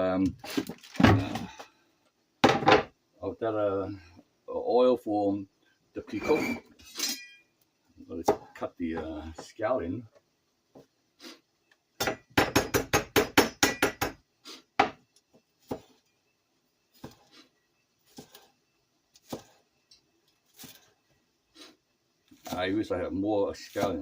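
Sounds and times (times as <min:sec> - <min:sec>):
knife chopping on cutting board: 0:15.6 - 0:15.9, 0:17.0 - 0:17.3, 0:19.2 - 0:19.6.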